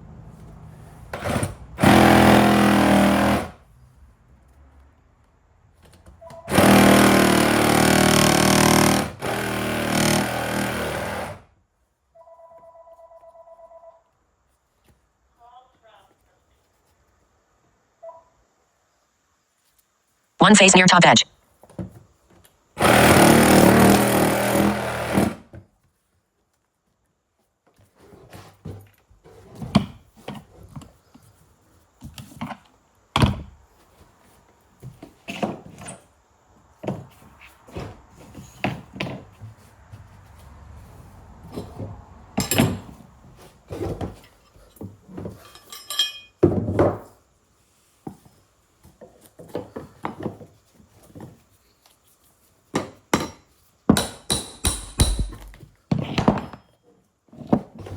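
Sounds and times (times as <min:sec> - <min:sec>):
wood and tools knocking: 0:53.9 - 0:56.6.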